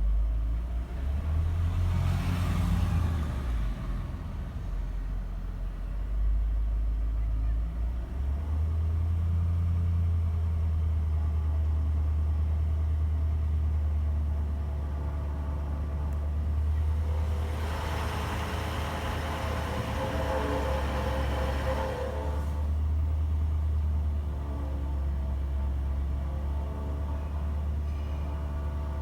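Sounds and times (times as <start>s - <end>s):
diesel engine running: 0.0s - 10.6s, 14.4s - 29.0s
engine rattle: 16.2s - 29.0s
bright harsh engine sound: 16.8s - 22.8s.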